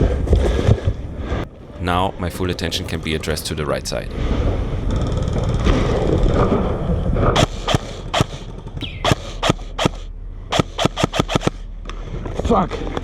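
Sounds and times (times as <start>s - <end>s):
airsoft rifle shots: 7.4s - 11.6s.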